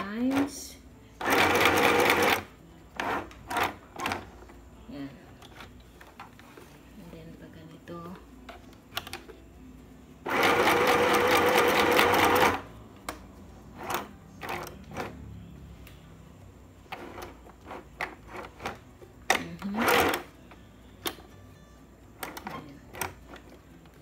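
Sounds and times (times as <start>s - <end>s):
sewing machine stitching: 1.2s - 4.4s, 10.3s - 12.6s, 16.9s - 20.3s.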